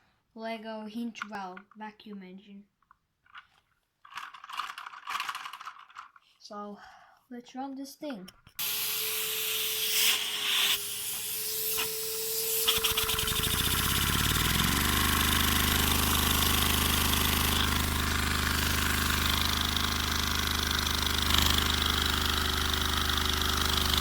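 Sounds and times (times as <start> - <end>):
vacuum engine buzzing: 8.6 - 24.0.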